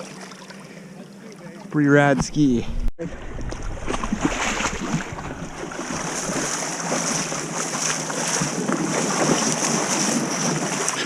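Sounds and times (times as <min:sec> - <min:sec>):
wind noise on microphone: 0:02.2 - 0:06.4
water rushing: 0:02.2 - 0:11.0
wind rushing: 0:02.3 - 0:06.5.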